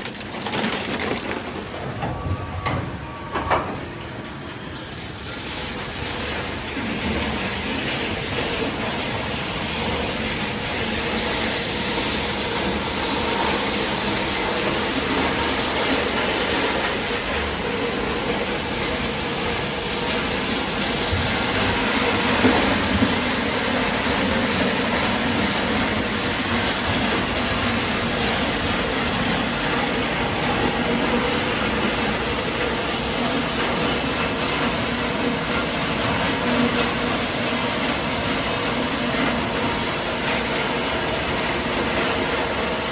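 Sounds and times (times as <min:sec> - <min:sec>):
recycling machinery running: 0:00.0 - 0:42.9.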